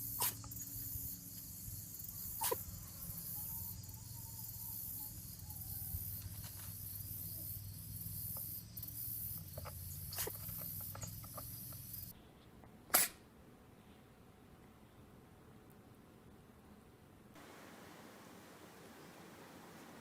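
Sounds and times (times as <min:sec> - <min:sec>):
steady background hum: 0:00.0 - 0:20.0
kitten sneezing: 0:00.2 - 0:00.4, 0:02.4 - 0:02.6, 0:12.9 - 0:13.2.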